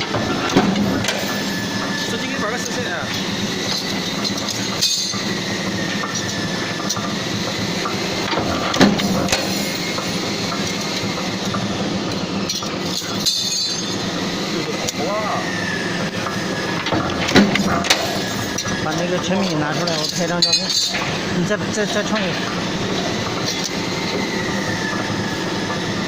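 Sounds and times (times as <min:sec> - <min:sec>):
punching machine running: 0:00.0 - 0:26.0
metallic clinking of steel pieces: 0:03.7 - 0:05.2, 0:12.5 - 0:14.0, 0:19.4 - 0:21.2
sharp knocks: 0:16.8 - 0:18.2.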